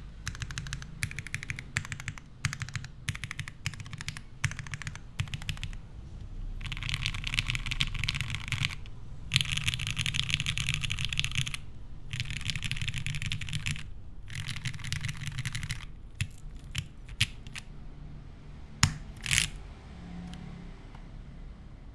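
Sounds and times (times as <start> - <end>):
mechanical keyboard typing: 0.0 - 17.7, 18.8 - 19.6.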